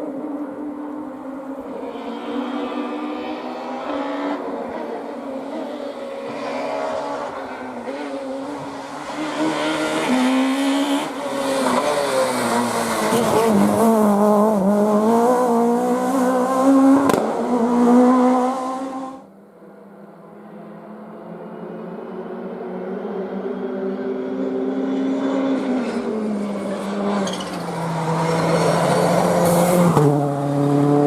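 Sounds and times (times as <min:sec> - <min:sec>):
rally car engine revving: 0:00.1 - 0:19.3, 0:22.8 - 0:31.0.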